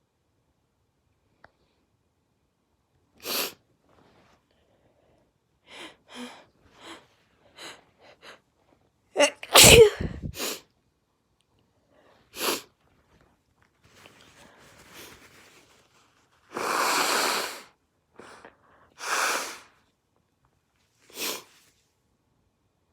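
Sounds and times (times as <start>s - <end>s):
person sneezing: 9.2s - 10.6s
quick breathy breaths: 16.5s - 19.8s.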